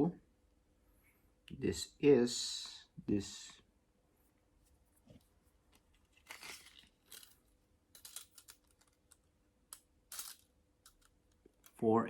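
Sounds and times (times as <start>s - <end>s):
soft rustles and scrapes: 4.2s - 9.2s.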